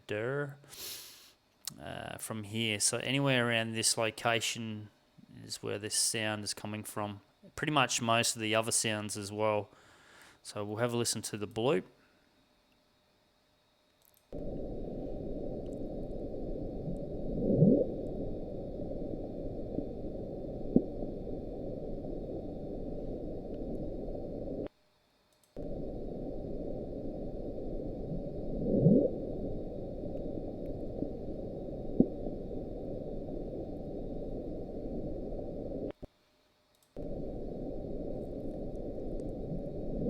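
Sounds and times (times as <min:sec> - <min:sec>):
low ocean noise: 0:14.4 - 0:24.7, 0:25.6 - 0:36.1, 0:37.0 - 0:40.0.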